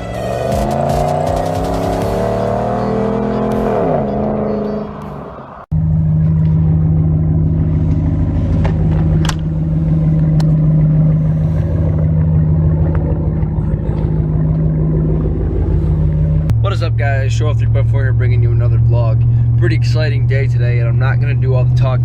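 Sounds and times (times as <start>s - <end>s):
music: 0.0s - 4.4s
car engine and road drone: 0.0s - 22.0s.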